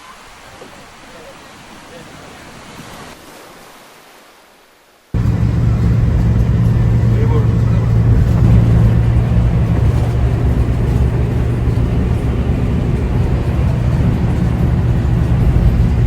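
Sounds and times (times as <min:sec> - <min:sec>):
continuous rushing noise: 0:05.2 - 0:16.0
engine low hum: 0:05.2 - 0:16.0.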